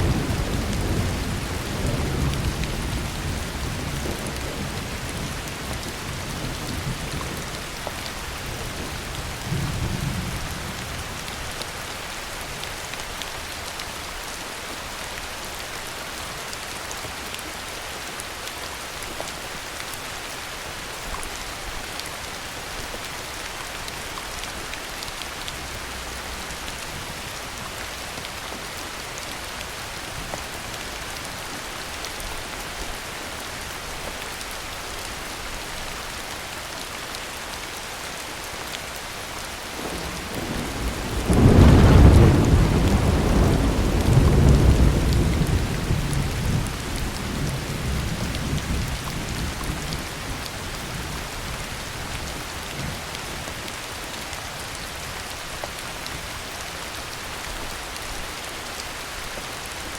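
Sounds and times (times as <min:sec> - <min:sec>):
heavy rain falling: 0:00.0 - 0:59.9
low thunder rumble: 0:39.8 - 0:50.1.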